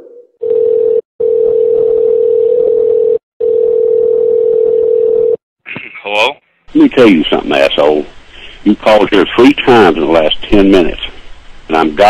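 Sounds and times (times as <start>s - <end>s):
telephone tone: 0.4s - 5.4s.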